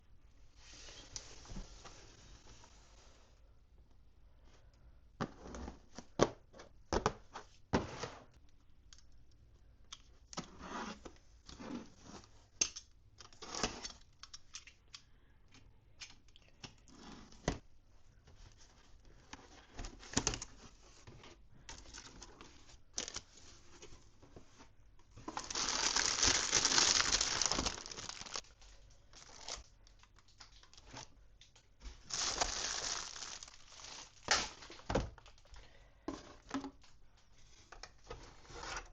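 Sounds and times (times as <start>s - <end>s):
plastic and paper crinkling: 21.7s - 31.2s, 31.8s - 35.5s
packaging tearing: 25.3s - 28.5s, 32.0s - 34.8s.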